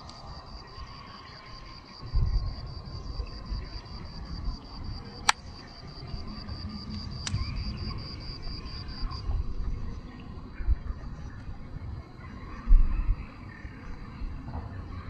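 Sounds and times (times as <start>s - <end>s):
insect chirping: 0.0s - 14.3s
sharp clicks: 5.2s - 5.5s
low rumble: 5.9s - 11.0s.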